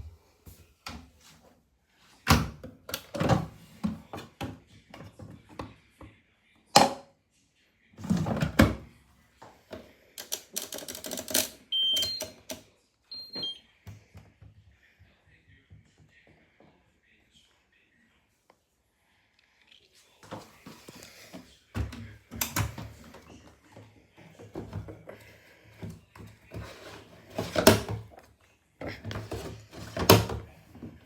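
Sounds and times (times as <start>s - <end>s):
short electronic beeps: 11.8s - 12.2s, 13.1s - 13.6s.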